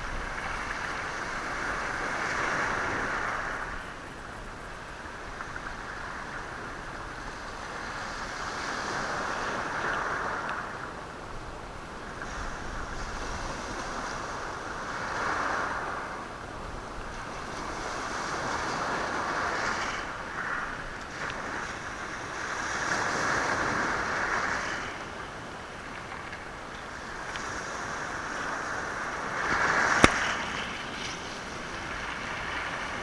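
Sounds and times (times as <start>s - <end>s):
waves breaking on stony shore: 0.0s - 4.0s, 4.6s - 33.0s
stones rolling in surf: 29.3s - 33.0s.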